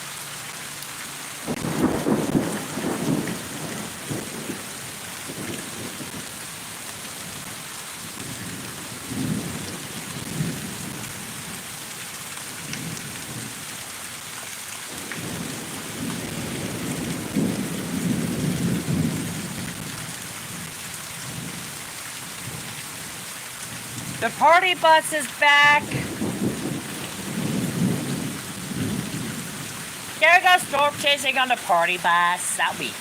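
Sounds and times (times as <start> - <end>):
rain hissing: 0.0 - 11.7, 14.9 - 33.0
thunder rumbling: 1.5 - 6.4, 14.9 - 20.0, 25.4 - 33.0.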